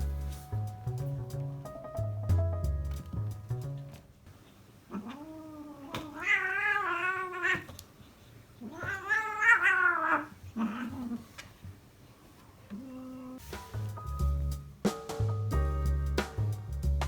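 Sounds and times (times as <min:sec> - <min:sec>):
cat yowling: 0:04.9 - 0:07.7, 0:08.6 - 0:11.2.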